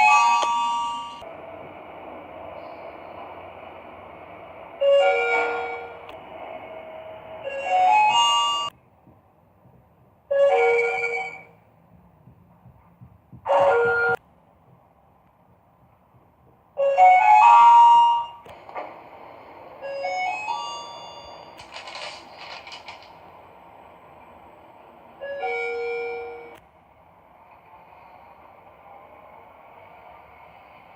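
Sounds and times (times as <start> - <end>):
elevator electronic chimes: 0.0 - 1.2, 7.3 - 8.7, 19.8 - 21.6.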